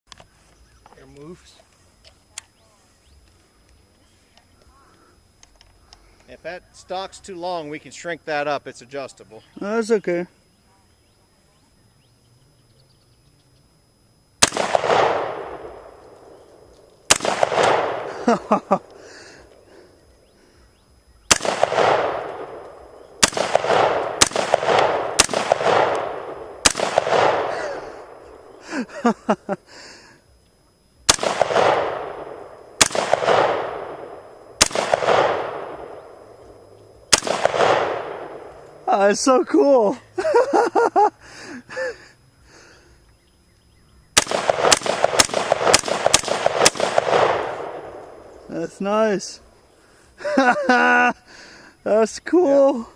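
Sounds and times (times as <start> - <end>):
rifle shots echoing: 14.4 - 19.9, 21.2 - 28.8, 31.1 - 38.9, 44.2 - 49.4.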